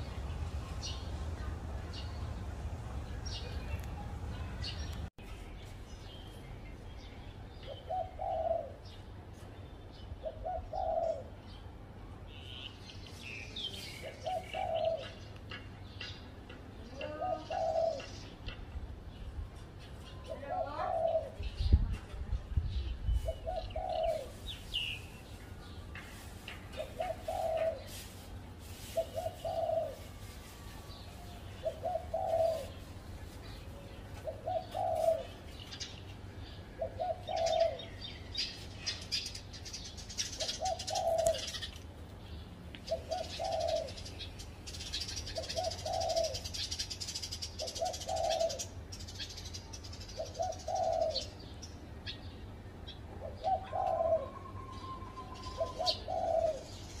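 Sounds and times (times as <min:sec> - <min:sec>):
small birds chirping: 0:00.0 - 0:57.0
dove cooing: 0:07.7 - 0:08.9, 0:10.2 - 0:11.4, 0:14.0 - 0:15.2, 0:17.0 - 0:18.2, 0:20.3 - 0:21.5, 0:23.2 - 0:24.5, 0:26.8 - 0:28.0, 0:28.9 - 0:30.2, 0:31.6 - 0:32.9, 0:34.2 - 0:35.5, 0:36.8 - 0:38.0, 0:40.2 - 0:41.7, 0:42.9 - 0:44.1, 0:44.9 - 0:48.8, 0:50.2 - 0:51.5, 0:53.2 - 0:56.9.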